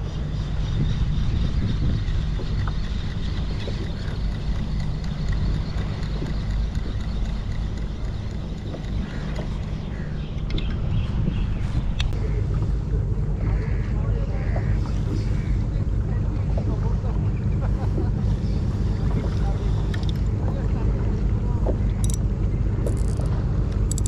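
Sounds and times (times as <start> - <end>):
wind buffeting microphone: 0.0 - 13.5.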